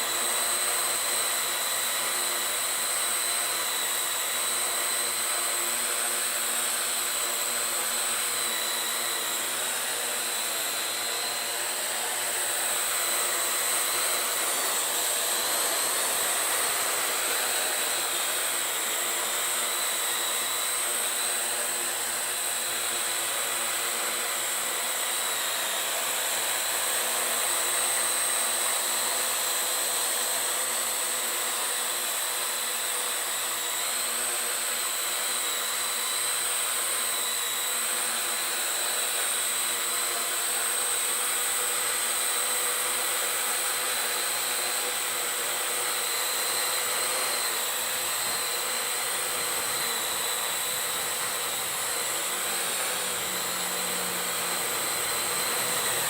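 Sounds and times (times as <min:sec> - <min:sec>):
drone motors whining: 0:02.8 - 0:29.4, 0:41.0 - 0:56.0.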